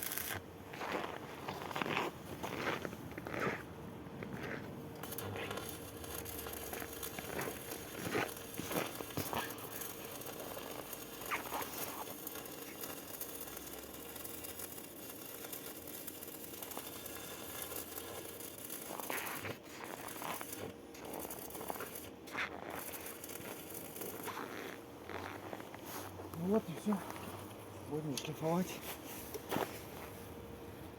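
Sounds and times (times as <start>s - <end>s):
sharp welding pops: 0.0s - 0.5s, 4.5s - 24.8s
welding arc crackling: 0.0s - 28.8s.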